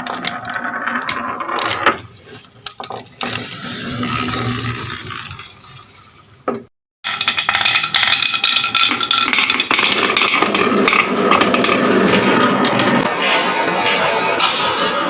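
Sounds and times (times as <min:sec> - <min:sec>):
marbles clattering down wooden run: 0:00.0 - 0:03.2, 0:07.1 - 0:11.9.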